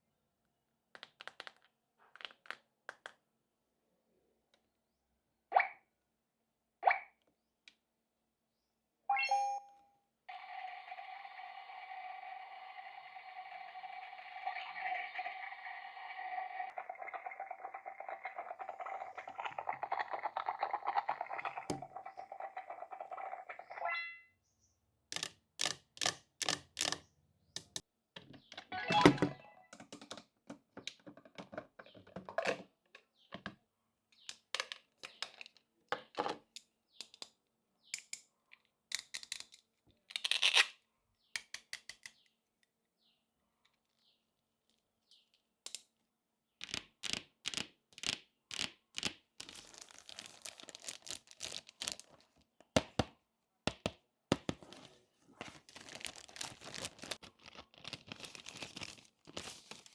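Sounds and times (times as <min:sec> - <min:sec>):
plastic toy pieces clicking: 0:25.1 - 0:27.0, 0:34.3 - 0:35.6, 0:36.6 - 0:37.4, 0:38.0 - 0:38.3, 0:38.9 - 0:40.8, 0:41.4 - 0:42.2, 0:46.6 - 0:49.6
packaging rustling: 0:49.4 - 0:52.5, 0:54.4 - 0:59.9.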